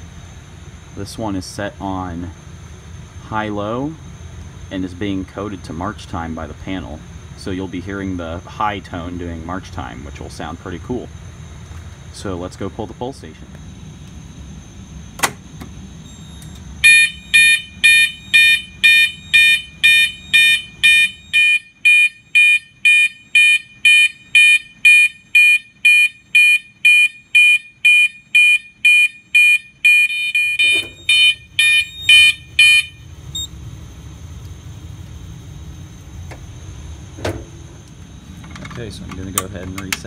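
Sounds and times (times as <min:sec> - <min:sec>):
pulsed fire alarm horn: 0:16.0 - 0:33.5.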